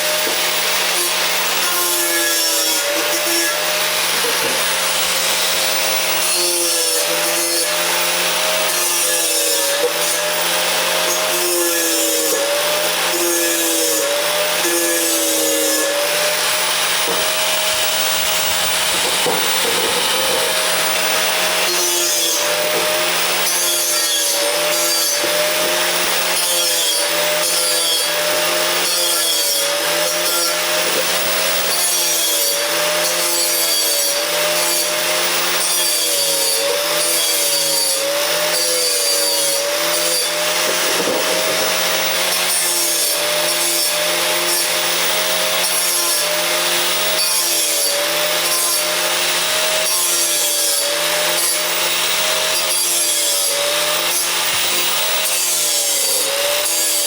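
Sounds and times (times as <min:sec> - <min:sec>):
angle grinder grinding steel: 0:00.0 - 0:57.0.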